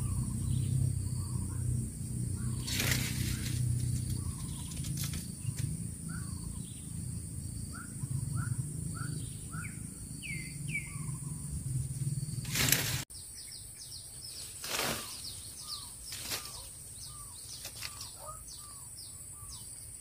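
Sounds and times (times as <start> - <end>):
low steady hum: 0.0 - 14.4
brief rustle: 12.5 - 13.0.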